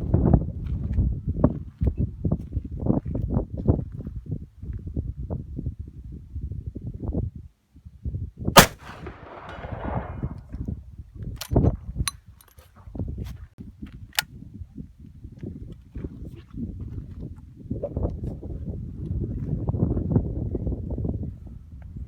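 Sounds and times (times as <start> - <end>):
rifle shot with echo: 8.6 - 10.5.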